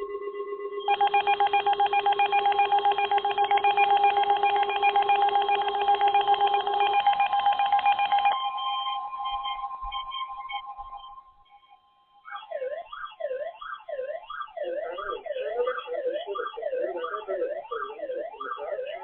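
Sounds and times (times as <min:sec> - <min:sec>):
rapidly pulsing beep: 0:00.8 - 0:11.2, 0:14.6 - 0:19.0.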